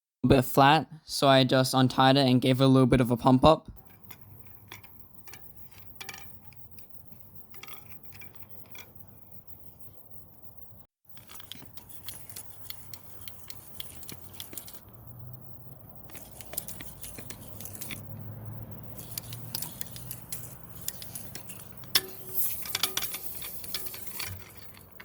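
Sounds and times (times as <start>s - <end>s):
bicycle tyre clicks and rubbing: 11.1s - 25.0s.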